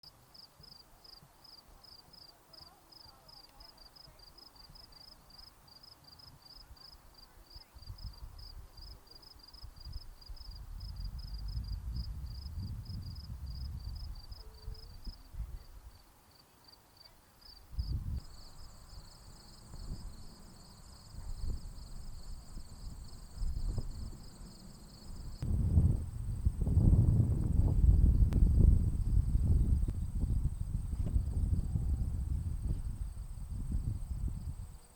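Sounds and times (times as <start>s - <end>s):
insects chirping: 15.9s - 26.6s.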